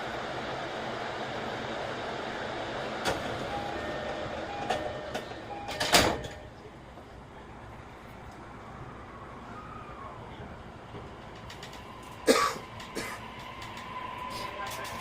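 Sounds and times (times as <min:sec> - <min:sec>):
train doors closing with bang: 0:02.9 - 0:06.7, 0:10.8 - 0:15.0.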